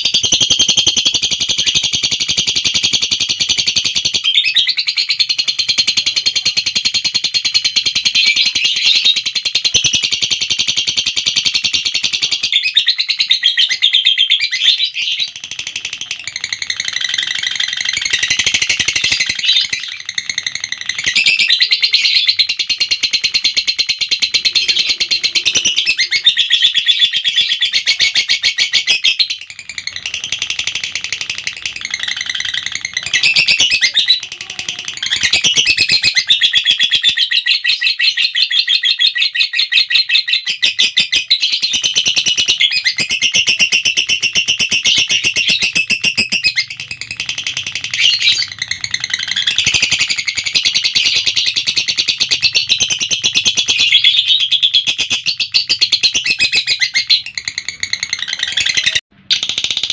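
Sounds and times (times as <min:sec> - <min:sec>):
lovebird chattering: 0:00.0 - 0:59.9.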